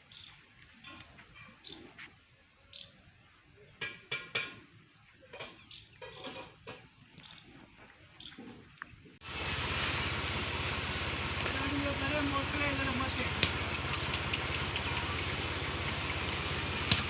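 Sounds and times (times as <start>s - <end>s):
small birds chirping: 0.0s - 0.4s, 2.7s - 3.0s, 5.4s - 6.4s, 9.7s - 17.0s.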